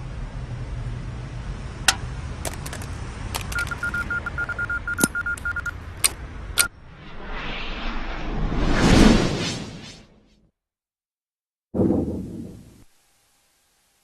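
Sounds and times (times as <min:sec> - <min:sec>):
sharp clicks: 0:01.9 - 0:06.7
short electronic beeps: 0:03.5 - 0:05.8.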